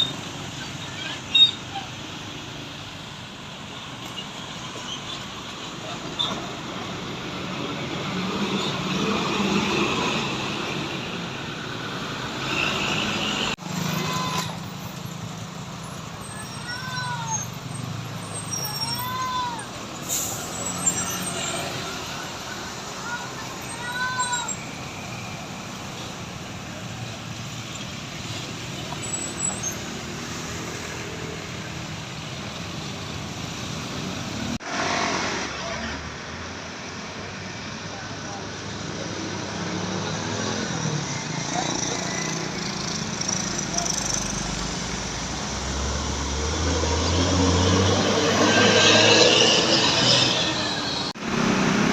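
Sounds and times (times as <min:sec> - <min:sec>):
buses passing: 0:00.0 - 0:51.9
road traffic noise: 0:00.0 - 0:51.9.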